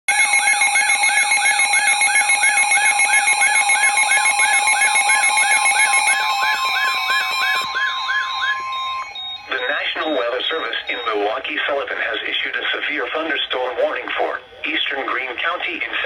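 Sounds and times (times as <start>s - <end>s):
warbling electronic alert siren: 0.1s - 11.8s
steady alert tone: 0.2s - 11.4s
steady buzzing tones: 1.6s - 12.8s.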